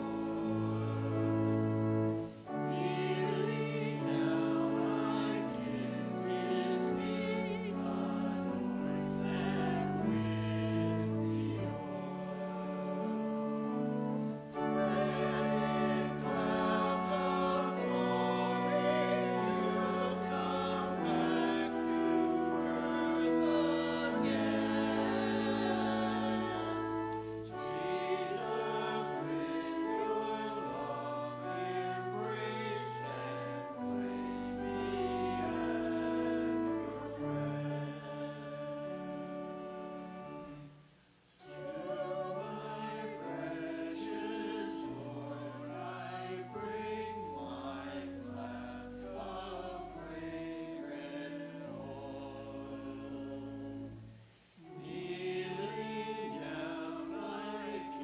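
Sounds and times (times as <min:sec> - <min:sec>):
choir singing sacred piece: 0:00.0 - 0:58.0
instrumental accompaniment: 0:00.0 - 0:58.0.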